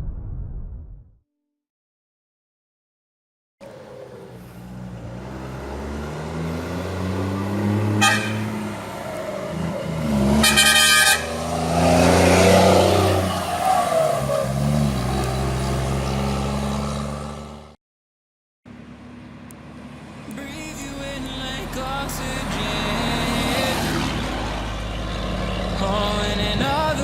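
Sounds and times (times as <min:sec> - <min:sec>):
truck horn: 0:07.6 - 0:09.0, 0:10.0 - 0:13.7, 0:22.9 - 0:26.9
diesel truck engine running: 0:18.7 - 0:27.0.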